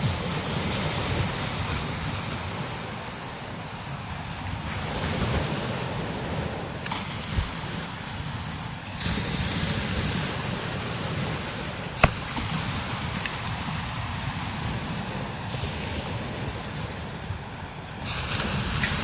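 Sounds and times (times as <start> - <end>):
strong wind blowing in gusts: 0.0 - 19.0
sharp pop: 12.0 - 12.6.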